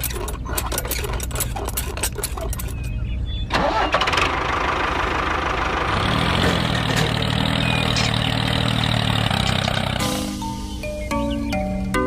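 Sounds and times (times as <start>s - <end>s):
engine running: 0.0s - 10.7s.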